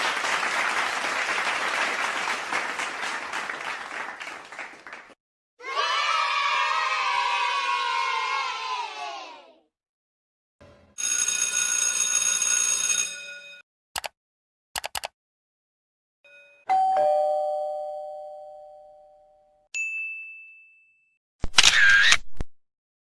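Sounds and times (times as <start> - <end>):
two-tone doorbell chime: 16.3 - 21.2.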